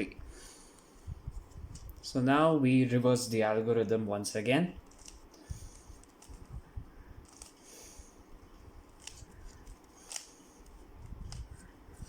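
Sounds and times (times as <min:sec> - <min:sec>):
plastic puzzle cube clicking: 0:04.9 - 0:05.2, 0:07.2 - 0:07.5, 0:09.0 - 0:11.5.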